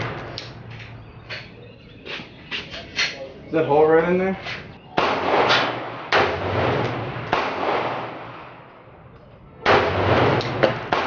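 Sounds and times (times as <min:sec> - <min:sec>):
echoing gunshots: 0:04.9 - 0:08.9, 0:09.6 - 0:11.0
sharp gunshot cracks: 0:05.0 - 0:08.6, 0:09.6 - 0:11.0.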